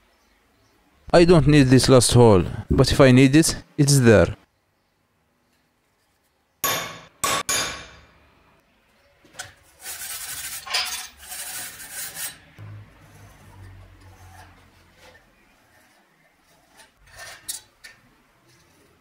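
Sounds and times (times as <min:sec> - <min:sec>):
metal knocks ringing: 0:06.6 - 0:08.1
metal scraping: 0:09.8 - 0:19.0.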